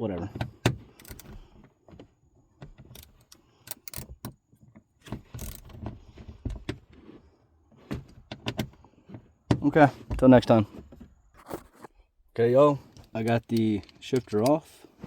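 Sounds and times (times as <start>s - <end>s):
hand tools clicking on metal bolts: 0.5s - 1.5s, 2.6s - 4.4s, 5.0s - 5.8s, 12.9s - 14.9s.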